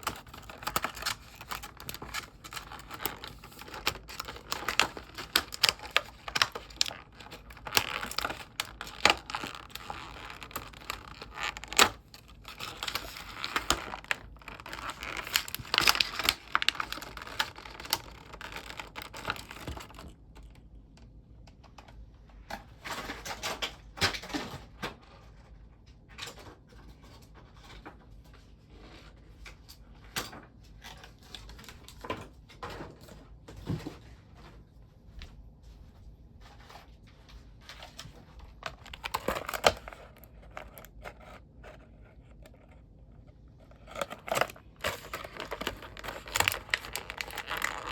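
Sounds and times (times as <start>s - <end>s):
packaging crinkling and tearing: 0.0s - 20.6s, 37.6s - 47.9s.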